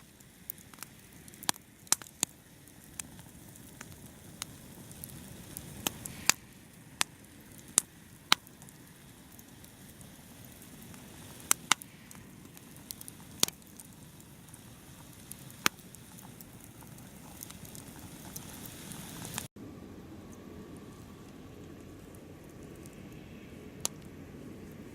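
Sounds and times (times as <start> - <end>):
firewood popping and cracking: 0.0 - 19.5, 20.8 - 24.9
flames rushing: 0.0 - 19.5.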